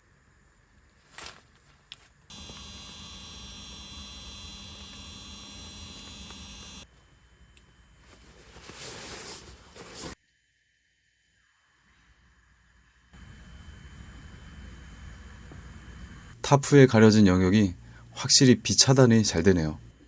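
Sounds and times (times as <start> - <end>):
steady electrical hum: 0.0 - 10.2, 10.8 - 20.0
electrical buzz: 2.3 - 6.9.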